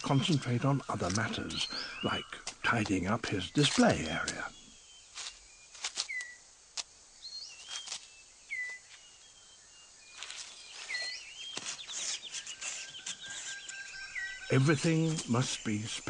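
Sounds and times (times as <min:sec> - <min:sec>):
birds whistling calls: 0:00.0 - 0:06.5, 0:07.2 - 0:16.0
rapid chirps: 0:00.0 - 0:06.5, 0:10.1 - 0:16.0
crisp rustles and clicks: 0:00.0 - 0:09.1, 0:10.1 - 0:16.0.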